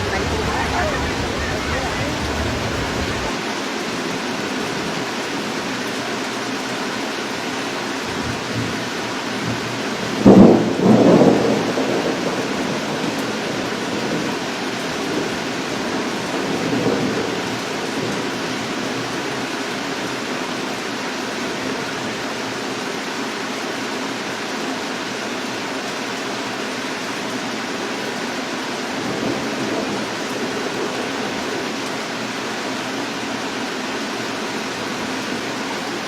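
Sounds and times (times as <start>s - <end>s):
floodwater rushing: 0.0s - 8.0s, 18.6s - 36.0s.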